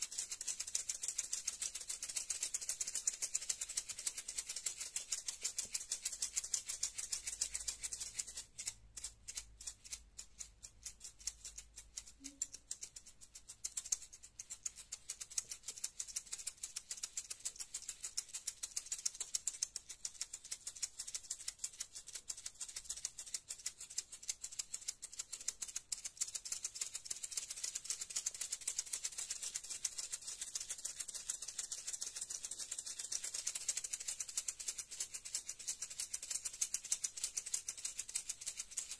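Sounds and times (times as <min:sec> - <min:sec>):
maracas rattling: 0:00.0 - 0:38.9.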